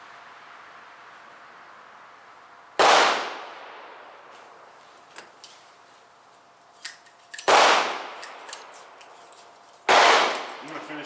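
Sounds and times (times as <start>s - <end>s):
revolver gunshot: 2.8s - 4.0s, 7.5s - 8.2s, 9.9s - 10.7s.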